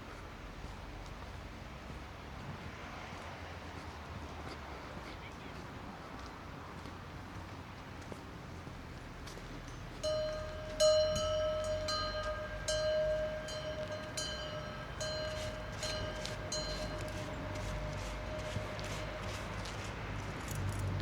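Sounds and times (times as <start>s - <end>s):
bell-like metal strikes: 9.7s - 20.6s.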